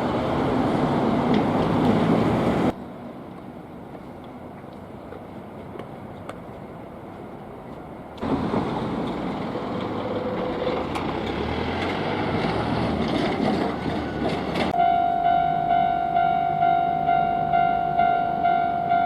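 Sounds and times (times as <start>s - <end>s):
train wheels rushing past: 8.2s - 14.8s
level crossing warning bell: 14.8s - 19.0s.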